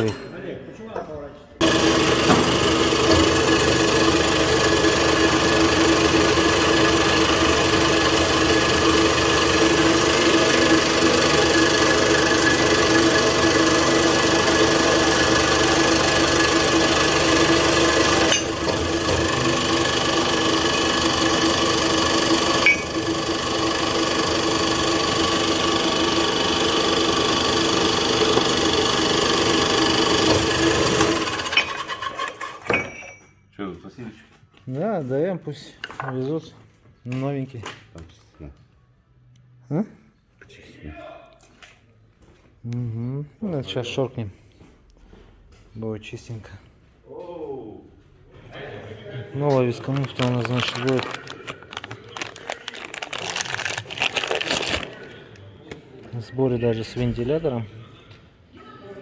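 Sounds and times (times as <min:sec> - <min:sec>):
machine humming: 0:01.6 - 0:31.8
pneumatic impact wrench rattling: 0:01.6 - 0:33.0.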